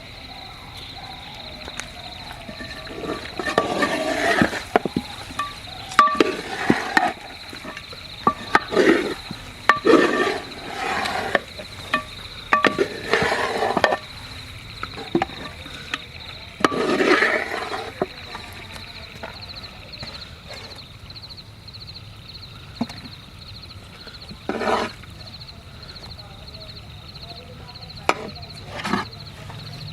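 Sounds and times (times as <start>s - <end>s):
insect trilling: 0.0s - 29.9s
scraping bursts: 1.8s - 16.0s, 16.6s - 18.7s, 24.3s - 25.0s
utensils clinking and knocking: 2.4s - 10.4s, 11.3s - 14.0s.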